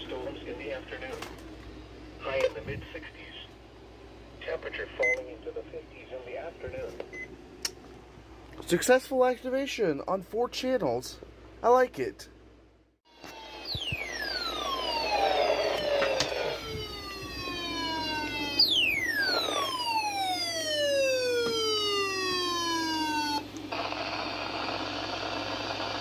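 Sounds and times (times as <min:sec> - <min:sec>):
siren-like tone falling in pitch: 0:13.1 - 0:23.6.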